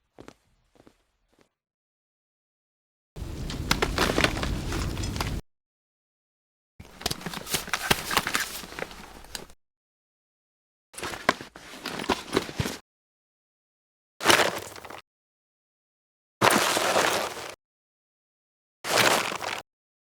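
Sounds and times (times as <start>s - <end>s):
clattering clicks and knocks: 3.2s - 5.4s.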